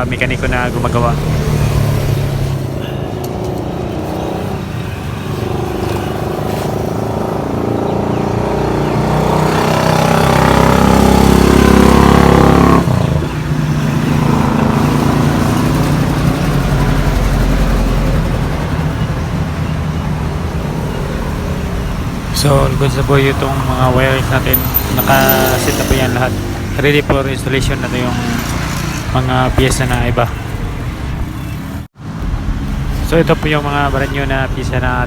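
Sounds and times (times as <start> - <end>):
vehicle engine revving: 0.0 - 18.9, 21.1 - 31.8.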